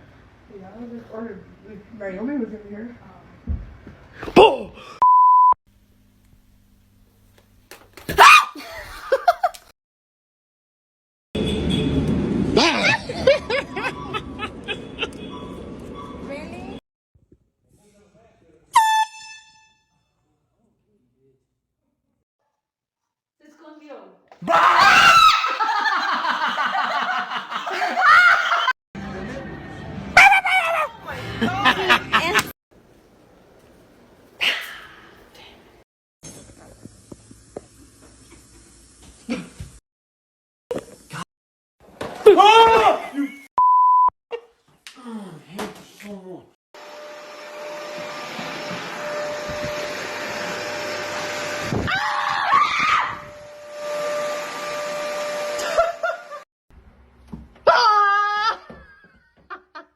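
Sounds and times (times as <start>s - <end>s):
person screaming: 8.1s - 8.7s, 24.4s - 25.8s, 27.9s - 28.7s, 30.2s - 31.1s, 57.7s - 58.8s
person laughing: 8.6s - 9.6s, 12.6s - 15.2s, 24.4s - 28.7s, 30.3s - 32.5s, 55.6s - 56.4s, 57.7s - 59.9s
small appliance motor whirring: 46.8s - 51.8s.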